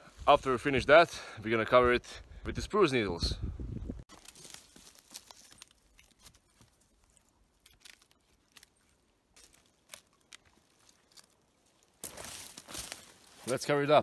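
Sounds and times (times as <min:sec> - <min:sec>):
twigs snapping: 0:04.1 - 0:13.6
dry twigs crackling and rustling: 0:04.1 - 0:14.0.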